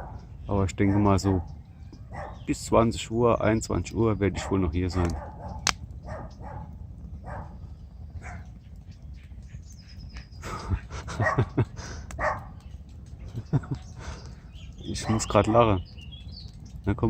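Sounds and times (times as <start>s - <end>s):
dog barking: 0.0s - 0.2s, 0.8s - 2.5s, 4.4s - 7.6s, 8.2s - 8.5s, 11.2s - 11.6s, 12.2s - 12.6s.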